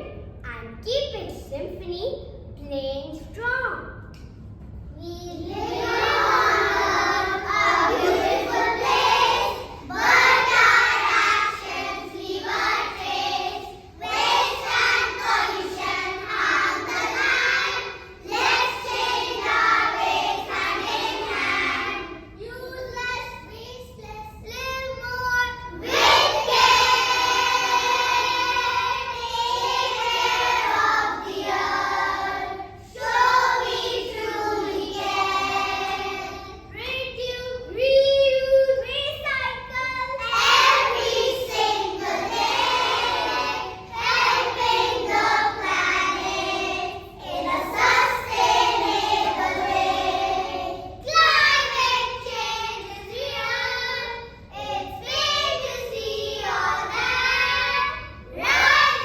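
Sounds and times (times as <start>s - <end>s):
children singing: 5.5s - 22.3s, 25.7s - 36.7s, 40.0s - 59.0s.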